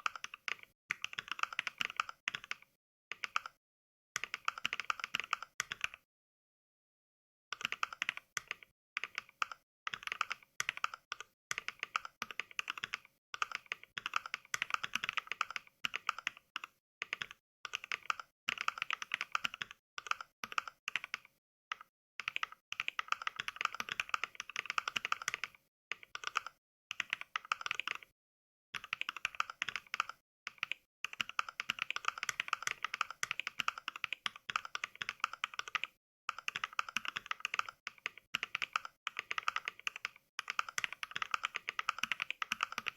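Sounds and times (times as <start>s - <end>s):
mechanical keyboard typing clicks: 7.6s - 28.1s, 28.8s - 42.9s.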